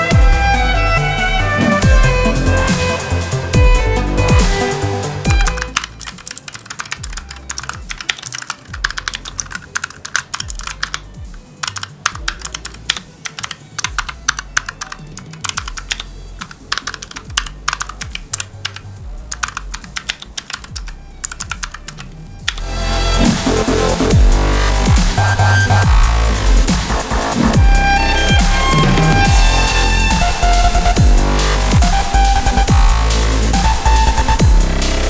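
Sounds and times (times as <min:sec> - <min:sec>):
quiet electronic music: 0:00.0 - 0:35.0
clicky keyboard typing: 0:05.3 - 0:22.6.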